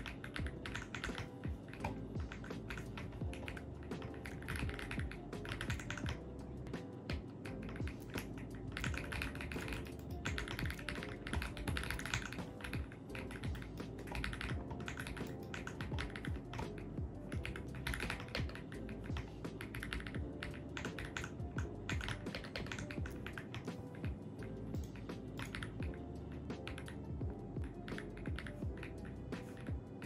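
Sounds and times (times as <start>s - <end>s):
mechanical keyboard keys clacking: 0.0s - 6.2s, 7.0s - 26.0s, 27.6s - 29.8s
background music: 0.0s - 30.0s.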